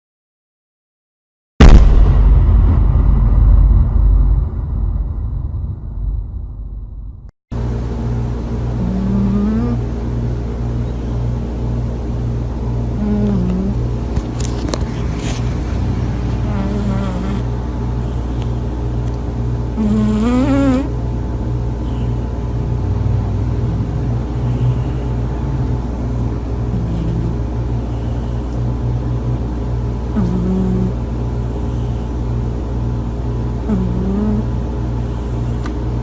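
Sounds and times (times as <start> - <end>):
cat snoring: 8.8 - 9.8, 13.0 - 13.9, 15.2 - 18.6, 19.7 - 20.9, 22.8 - 25.8, 26.7 - 28.5, 30.1 - 32.1, 33.6 - 35.6.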